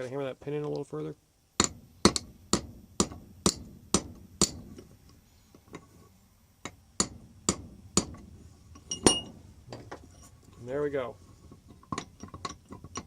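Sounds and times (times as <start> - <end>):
hammer striking metal pin: 1.6 - 5.0, 6.6 - 9.9.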